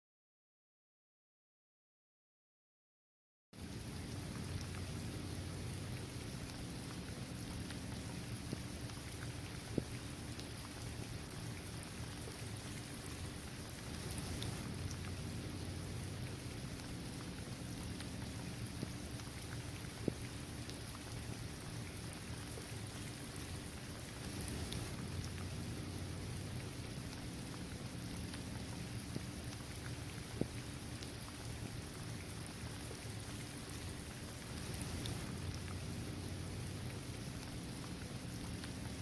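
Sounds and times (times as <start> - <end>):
steady rain on pavement: 3.6 - 39.0
steady low rumble: 13.6 - 20.2, 21.2 - 30.6, 34.3 - 39.0
single raindrop ticks: 34.5 - 35.8.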